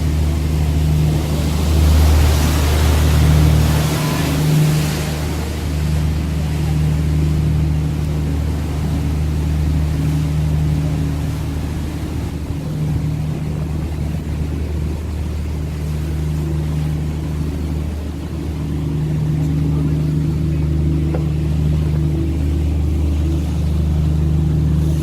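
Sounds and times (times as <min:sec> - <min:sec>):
boat engine low drone: 0:00.0 - 0:25.0.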